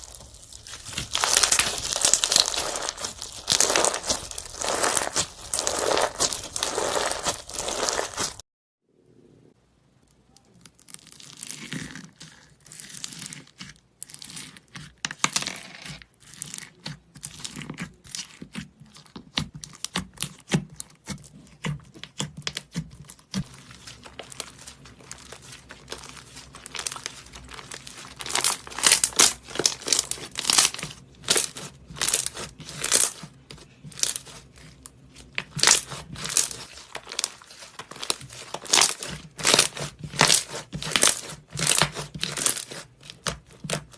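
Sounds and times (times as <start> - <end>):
slime squeezed and crackling: 0.0 - 8.4, 10.6 - 15.3, 16.2 - 43.9.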